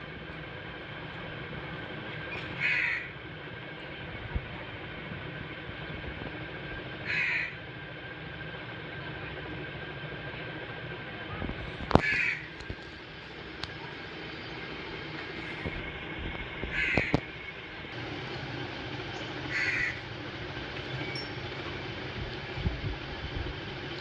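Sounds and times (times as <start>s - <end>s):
crow cawing: 2.6s - 3.1s, 7.0s - 7.6s, 12.0s - 12.5s, 16.7s - 17.1s, 19.5s - 20.0s.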